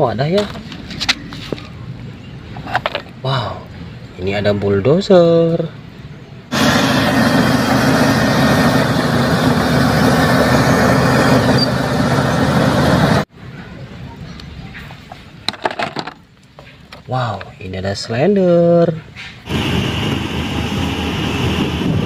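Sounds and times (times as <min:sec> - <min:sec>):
bulldozer engine running: 0:06.5 - 0:13.3.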